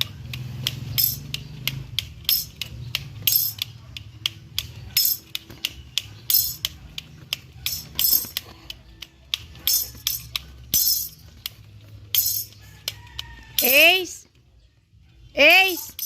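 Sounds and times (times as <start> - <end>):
sharp clicks: 0.0 - 9.6
metal umbrella parts clinking: 0.7 - 1.4, 2.2 - 3.6, 5.0 - 5.4, 6.3 - 6.6, 7.7 - 8.4, 9.6 - 11.2, 12.1 - 12.6.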